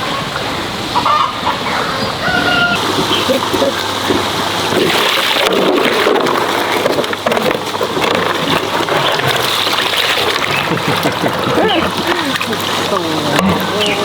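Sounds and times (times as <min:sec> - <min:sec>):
water splashing and sloshing: 0:00.0 - 0:14.0.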